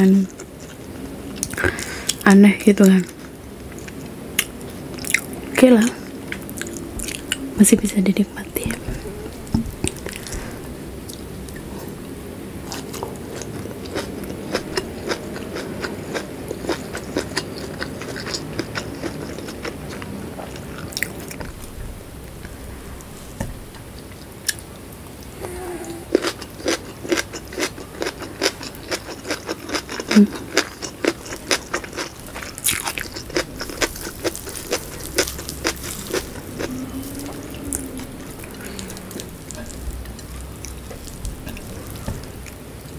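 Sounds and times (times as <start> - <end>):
crunchy chewing: 12.6 - 22.6, 26.1 - 42.9.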